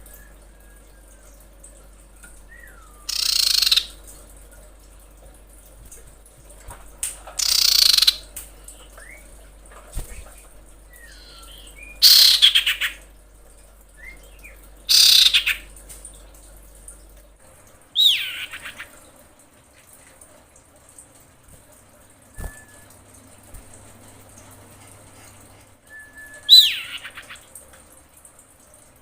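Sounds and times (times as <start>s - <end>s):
bird rasping calls: 3.1s - 3.9s, 7.4s - 8.2s, 11.1s - 13.0s, 14.9s - 15.7s, 18.0s - 18.9s, 26.5s - 27.5s.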